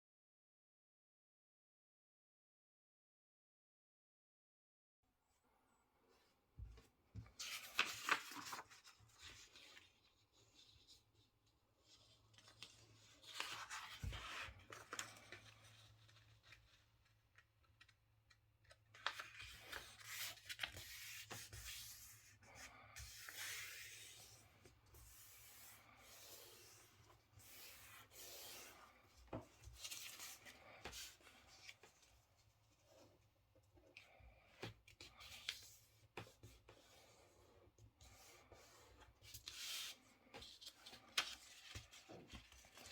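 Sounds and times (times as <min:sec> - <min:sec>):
paper rustling and creasing: 0:07.2 - 0:11.2, 0:11.8 - 0:33.2, 0:38.5 - 0:42.9.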